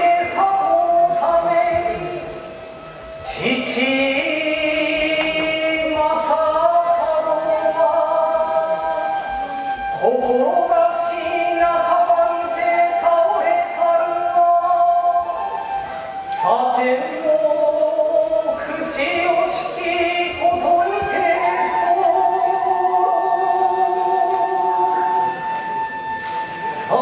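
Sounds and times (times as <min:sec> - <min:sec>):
voices chanting long notes: 0:17.3 - 0:27.0.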